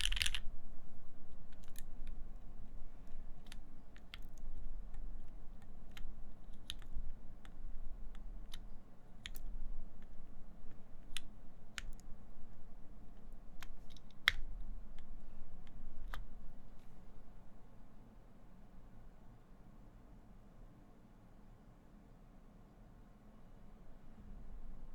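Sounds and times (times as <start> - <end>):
mechanical keyboard typing: 0.0 - 0.5, 1.3 - 12.2.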